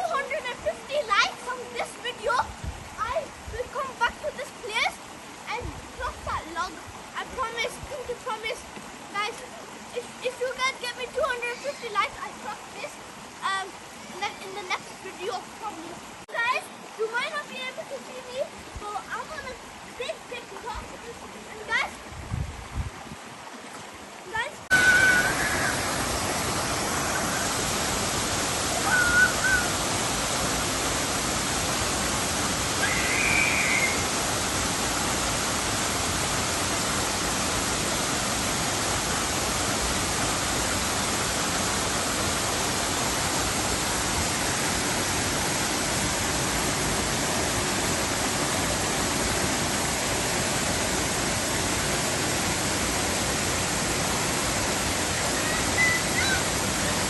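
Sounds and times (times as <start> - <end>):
waterfall rushing: 0.0 - 22.2, 23.3 - 57.0
faint high calls: 24.7 - 26.0, 28.8 - 29.8, 32.8 - 34.1, 55.3 - 56.5.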